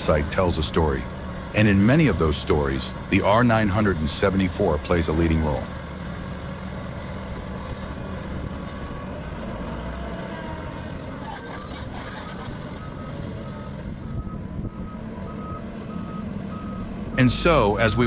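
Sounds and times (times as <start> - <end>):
diesel machinery running: 0.0 - 18.0
machinery clatter: 11.1 - 13.0
reversing alarm beeping: 11.5 - 18.0.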